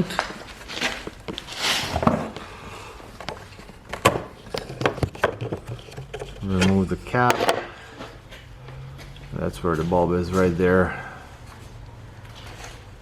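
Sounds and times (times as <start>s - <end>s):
hard plastic clicks and knocks: 7.3s - 7.7s.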